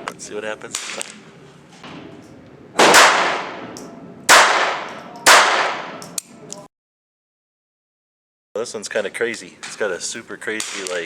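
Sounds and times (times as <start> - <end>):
pistol shots: 2.8 - 6.1.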